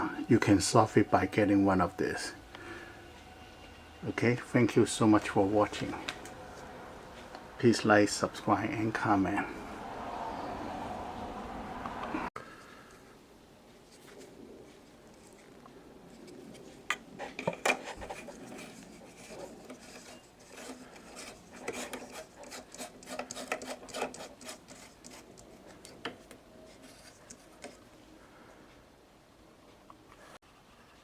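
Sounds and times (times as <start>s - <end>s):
handling rubbing and scraping: 0.0s - 9.5s, 13.7s - 28.1s.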